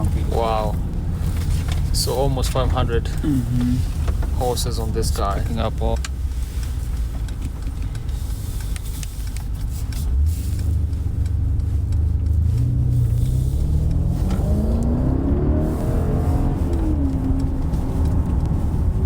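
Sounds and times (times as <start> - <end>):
car engine accelerating: 0.0 - 19.0.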